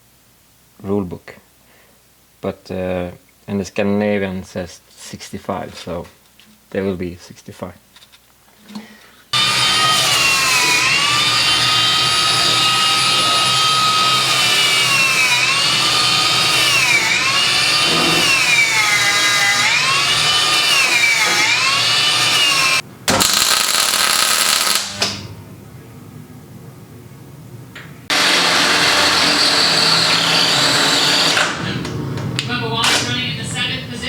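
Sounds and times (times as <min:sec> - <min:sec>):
power tool whining: 0:09.3 - 0:25.3, 0:28.1 - 0:33.2.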